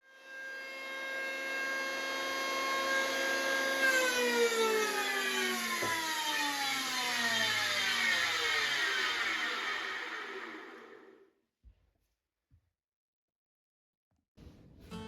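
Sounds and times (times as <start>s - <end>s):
jointer motor whining: 0.3s - 11.2s
knock: 5.8s - 6.0s.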